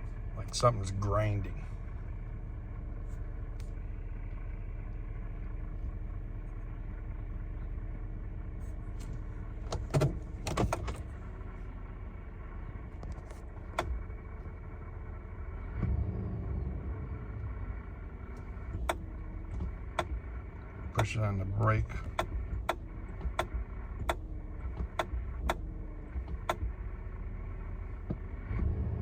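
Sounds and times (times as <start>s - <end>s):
truck engine idling drone: 0.0s - 29.0s
sharp clicks: 24.8s - 25.6s.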